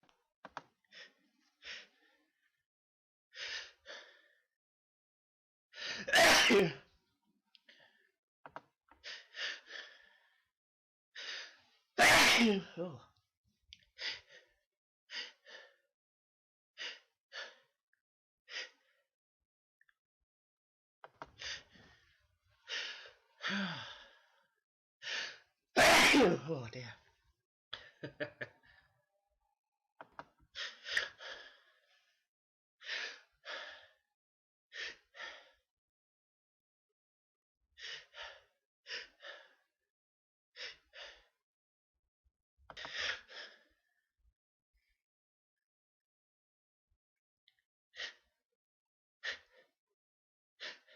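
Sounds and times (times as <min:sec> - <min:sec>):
person sneezing: 0:06.1 - 0:06.8, 0:12.0 - 0:12.7, 0:25.8 - 0:26.4.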